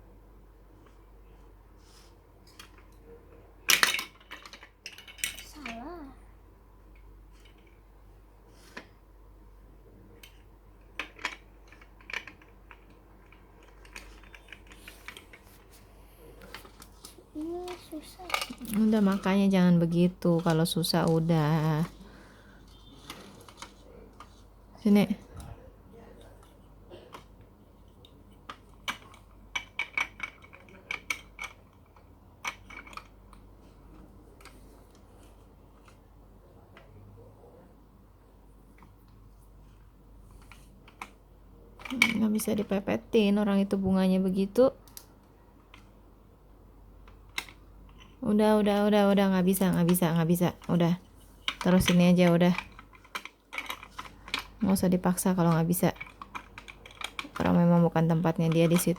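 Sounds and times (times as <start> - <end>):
plastic pieces clicking: 51.5 - 58.9.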